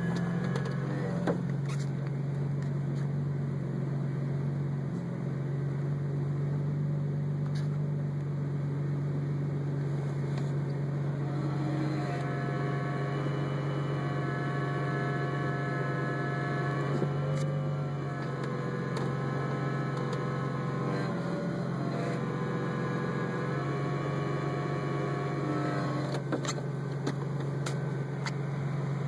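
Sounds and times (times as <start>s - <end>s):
whining tones: 0.0s - 2.7s, 9.6s - 29.0s
car engine running: 0.0s - 29.0s.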